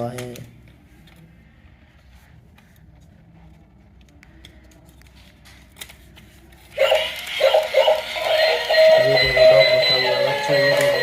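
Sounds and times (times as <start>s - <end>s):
electronic toy tune: 6.8s - 11.0s.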